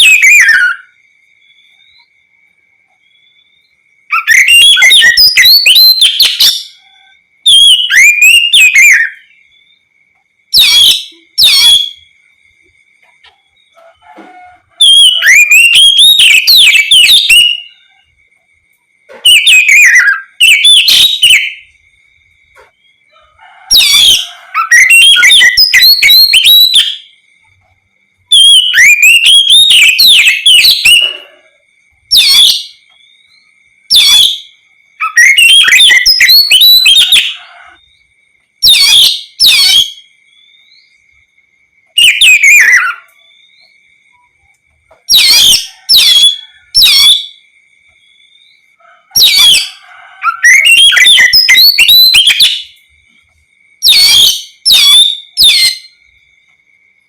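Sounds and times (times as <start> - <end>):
bird singing whistled phrases: 0.0 - 2.1, 3.0 - 9.4, 10.6 - 12.0, 14.8 - 17.9, 19.1 - 21.7, 23.8 - 27.1, 28.3 - 31.4, 32.1 - 33.0, 33.9 - 37.5, 38.6 - 41.0, 42.0 - 43.7, 49.2 - 52.8, 53.8 - 55.9.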